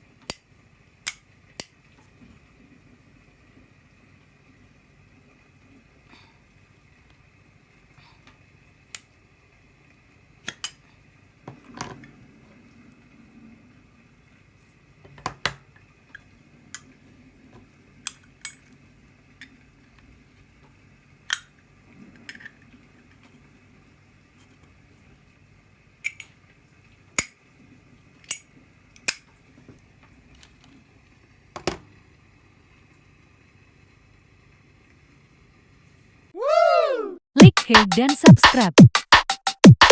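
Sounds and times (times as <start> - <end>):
lighter lid clicking: 1.0 - 1.8, 10.4 - 10.8, 27.2 - 27.4, 29.0 - 29.3.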